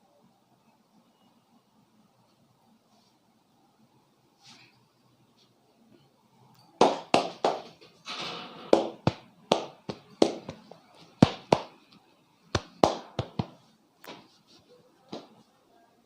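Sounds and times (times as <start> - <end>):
hands slapping head: 12.5 - 14.2.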